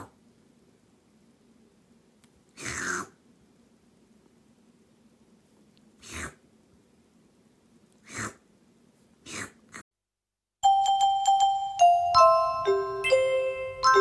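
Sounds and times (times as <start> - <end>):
cat sneezing: 2.6 - 3.2, 6.0 - 6.4, 8.0 - 8.4, 9.2 - 9.8
chiming glockenspiel music: 10.6 - 14.0.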